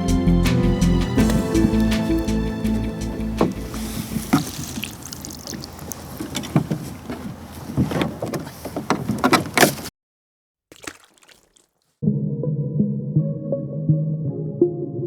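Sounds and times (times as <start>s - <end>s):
water sloshing and splashing: 1.1s - 9.9s, 10.7s - 11.9s.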